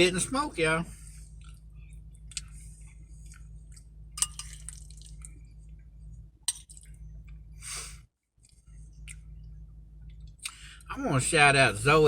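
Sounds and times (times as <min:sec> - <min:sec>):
steady low hum: 0:00.0 - 0:12.0
man chewing food: 0:01.1 - 0:07.6, 0:08.4 - 0:10.9
wet mouth clicks and smacks: 0:01.4 - 0:02.6, 0:08.4 - 0:09.3.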